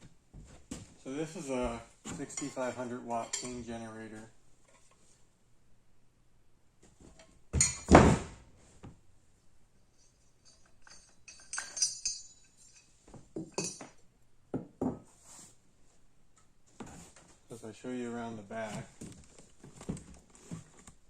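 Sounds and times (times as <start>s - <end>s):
ringing metal clinks: 9.9s - 14.0s.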